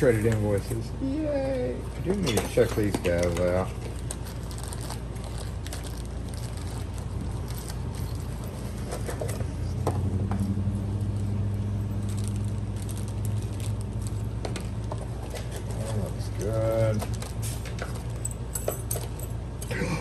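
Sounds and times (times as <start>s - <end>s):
steady low hum: 0.0s - 20.0s
boxes being opened and handled: 2.2s - 9.8s, 14.4s - 19.3s.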